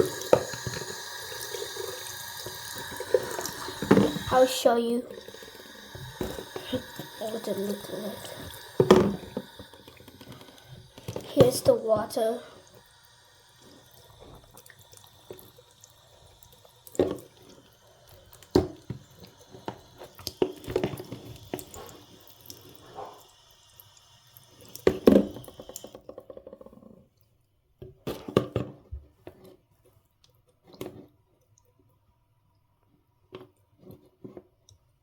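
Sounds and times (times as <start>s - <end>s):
tap water filling bottle: 0.0s - 26.6s.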